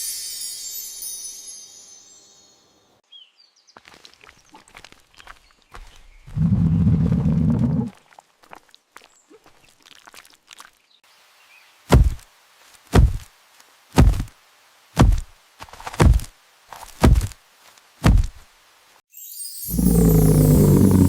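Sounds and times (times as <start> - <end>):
heavy deep thuds: 17.0 - 17.3
rising whoosh: 19.7 - 21.0.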